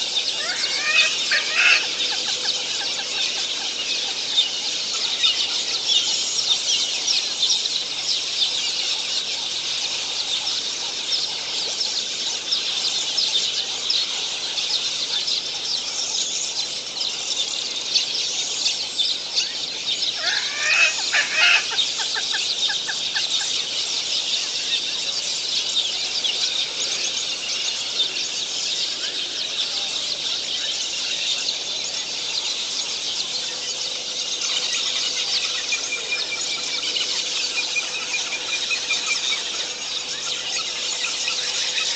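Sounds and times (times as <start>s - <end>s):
lower bird call: 0.0s - 4.4s, 20.0s - 23.6s
birds chirping and chattering: 0.0s - 41.9s.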